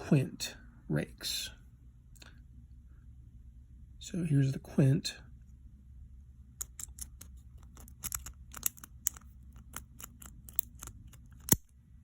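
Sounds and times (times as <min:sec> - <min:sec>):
lock pick raking metallic clicks: 0:06.6 - 0:11.7.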